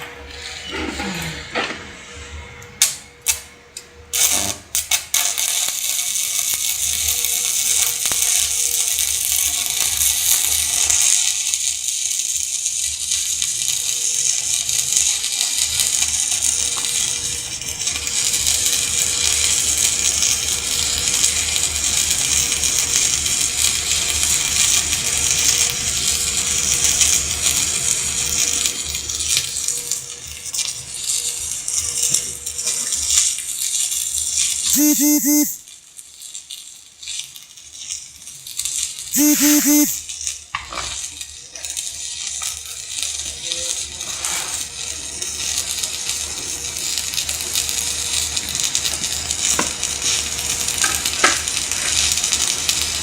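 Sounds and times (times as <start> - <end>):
welding arc strikes: 4.1 - 27.6
welding arc crackling: 4.1 - 40.4, 41.8 - 53.0.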